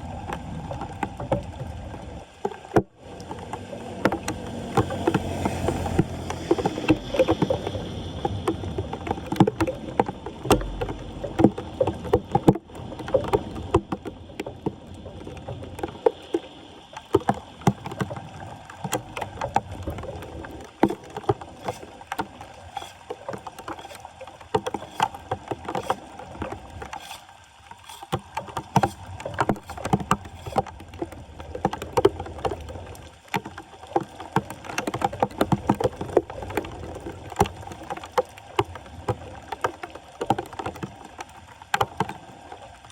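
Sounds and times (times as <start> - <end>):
water splashing and sloshing: 0.0 - 42.9
knocks and scrapes: 2.7 - 14.7, 18.8 - 33.5.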